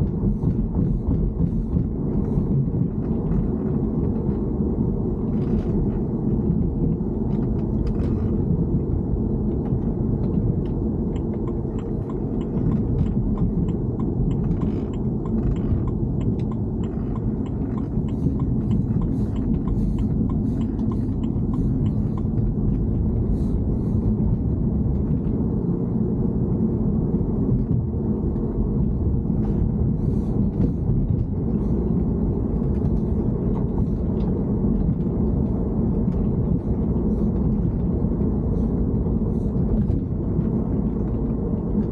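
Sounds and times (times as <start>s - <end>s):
car engine low rumble: 0.0s - 41.9s
faint clicks and ticks: 9.5s - 25.4s.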